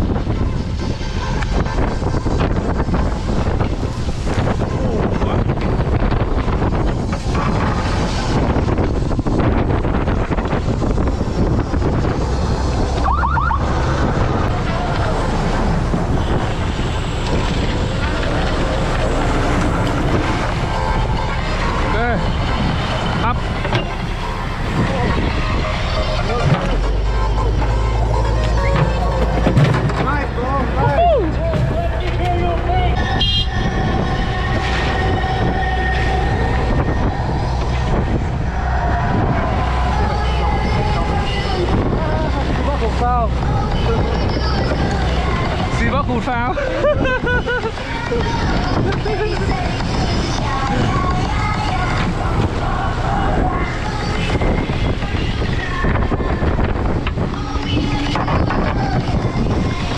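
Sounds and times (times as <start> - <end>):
water noise: 0.0 - 45.8
boat engine running: 0.0 - 59.9
wind: 0.0 - 59.9
hydraulic machinery whine: 10.8 - 46.0.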